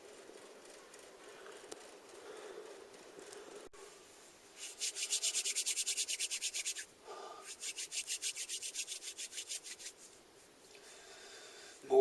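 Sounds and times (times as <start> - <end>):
rapid rhythmic rubbing: 4.6 - 10.2.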